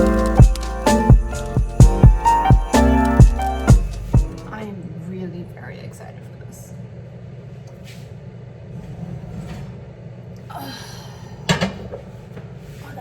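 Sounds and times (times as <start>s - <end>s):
steady low hum: 0.0s - 12.7s.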